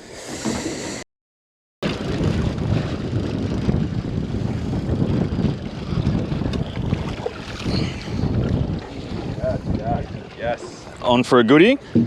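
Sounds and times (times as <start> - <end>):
water and boat noise: 0.0 - 1.0, 1.8 - 12.0
wind buffeting microphone: 1.8 - 12.0.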